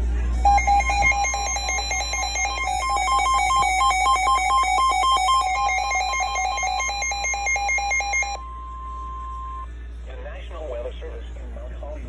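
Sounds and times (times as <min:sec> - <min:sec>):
steady alarm tone: 0:00.3 - 0:08.4
two-pitch alert beeps: 0:00.4 - 0:08.4.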